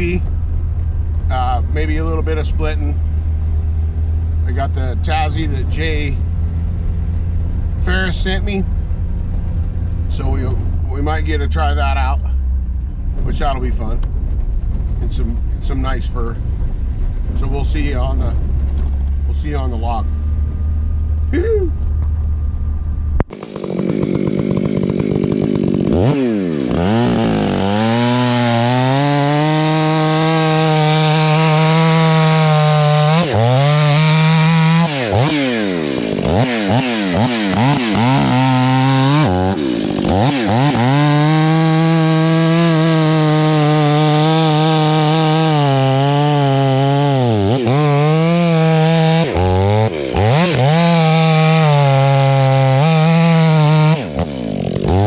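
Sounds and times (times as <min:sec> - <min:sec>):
chainsaw cutting logs: 0:23.2 - 0:55.0.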